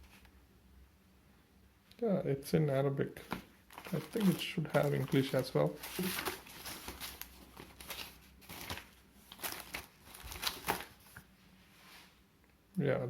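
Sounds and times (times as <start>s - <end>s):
paper rustling and crinkling: 3.2s - 11.3s.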